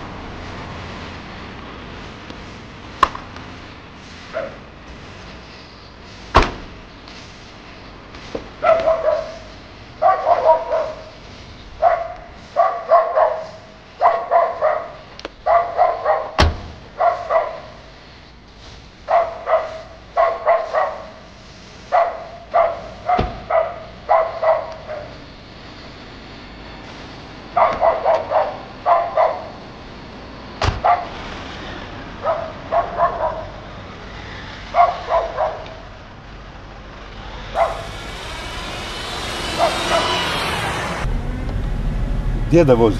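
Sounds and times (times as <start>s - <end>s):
dog barking: 4.3s - 4.7s, 8.6s - 11.1s, 11.8s - 17.8s, 19.1s - 21.3s, 21.9s - 25.2s, 27.6s - 29.6s, 30.8s - 31.1s, 32.2s - 33.6s, 34.7s - 35.8s, 37.6s - 37.9s.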